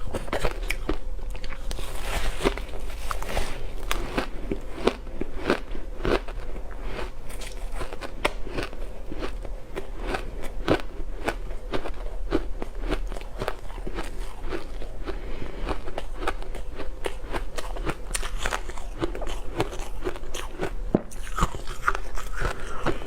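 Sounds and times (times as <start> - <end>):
person chewing ice: 0.0 - 23.0.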